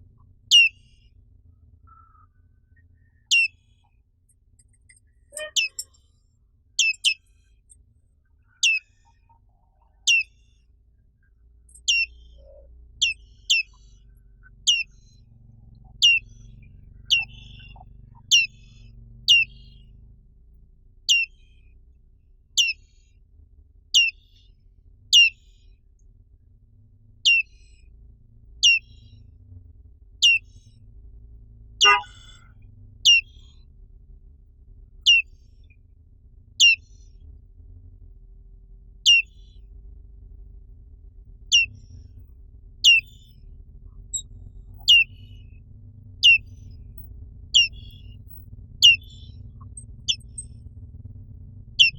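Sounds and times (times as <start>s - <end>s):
bird giving short high calls: 31.8s - 32.4s, 42.9s - 43.1s, 44.8s - 45.2s, 46.2s - 46.4s, 47.6s - 48.1s.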